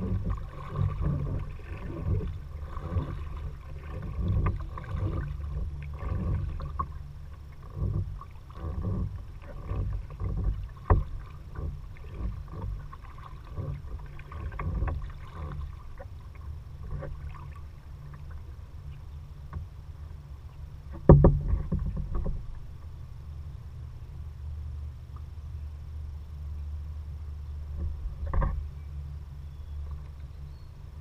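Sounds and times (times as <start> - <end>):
paddle splashing and dripping: 0.0 - 23.2
steady low rumble: 0.0 - 31.0.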